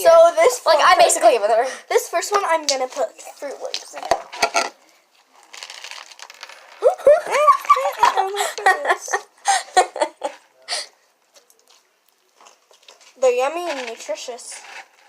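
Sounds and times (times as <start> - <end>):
girl giggling and squealing: 6.8 - 10.4.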